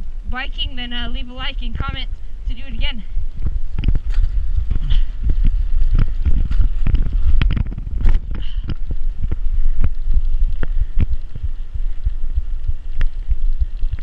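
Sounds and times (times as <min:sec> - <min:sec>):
bicycle rumbling over dirt: 0:00.0 - 0:14.0
bike knocks and rattles: 0:03.4 - 0:12.3.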